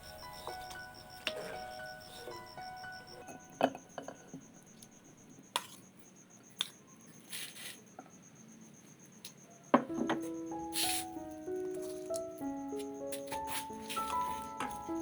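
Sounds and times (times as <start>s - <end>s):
cricket chirping: 0.0s - 15.0s.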